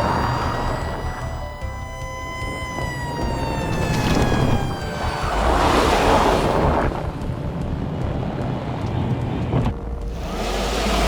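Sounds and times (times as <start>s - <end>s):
vehicle low rumble: 0.0s - 11.0s.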